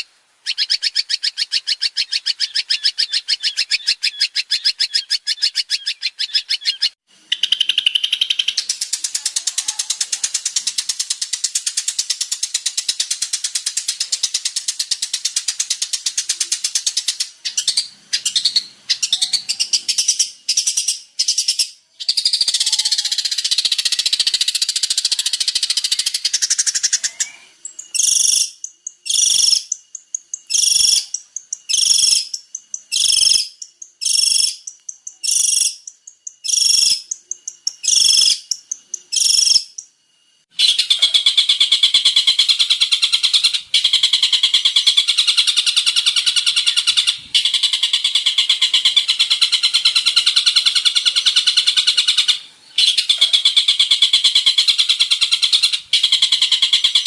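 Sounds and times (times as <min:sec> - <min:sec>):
bird singing rattling chatter: 0:00.0 - 0:39.9
high bird calls: 0:00.0 - 0:39.9, 0:40.5 - 0:57.0.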